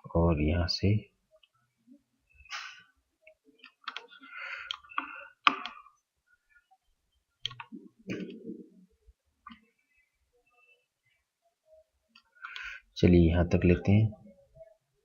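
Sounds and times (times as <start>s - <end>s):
mouse and keyboard clicks: 7.4s - 8.4s.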